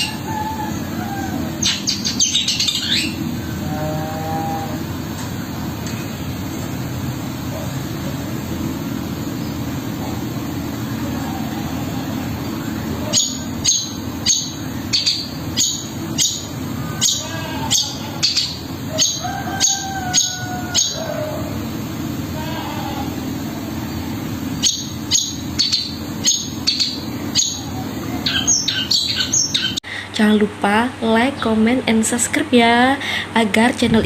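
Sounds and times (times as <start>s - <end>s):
steady low rumble: 0.1s - 17.0s, 33.6s - 34.0s
bird giving sharp downward calls: 11.1s - 21.5s, 24.6s - 29.8s.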